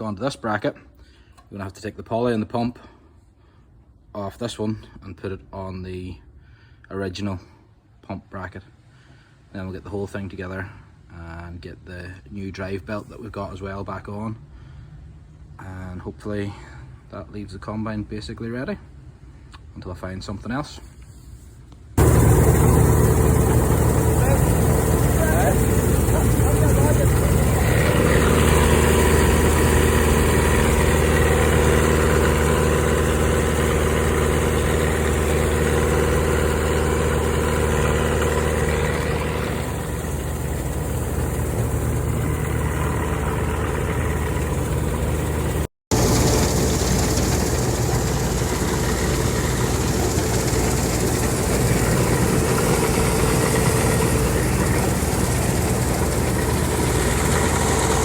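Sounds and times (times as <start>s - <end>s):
combine harvester running: 22.0s - 58.0s.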